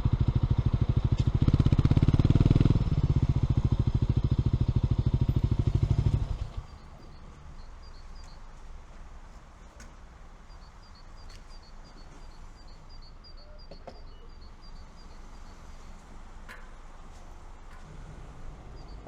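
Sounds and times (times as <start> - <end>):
low outdoor rumble: 0.0 - 9.1, 9.7 - 19.0
small bird chirping: 4.4 - 8.6, 10.4 - 16.0, 18.2 - 19.0.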